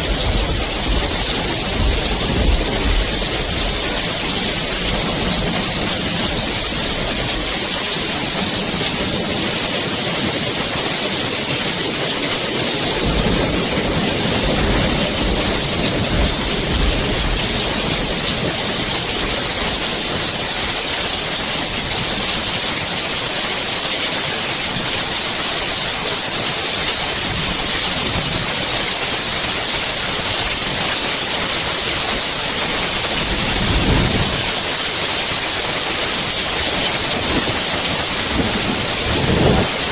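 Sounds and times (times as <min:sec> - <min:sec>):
low rumbles: 0:00.0 - 0:07.7
steady rain hiss: 0:00.0 - 0:39.9.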